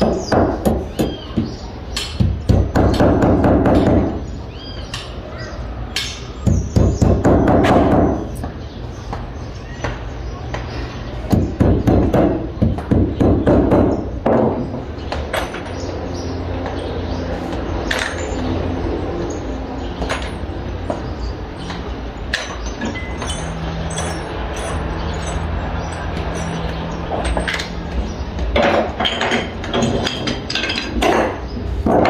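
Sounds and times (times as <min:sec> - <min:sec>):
loud clattering and scraping: 0:20.0 - 0:32.0
sharp knocks and clinks: 0:20.0 - 0:32.0.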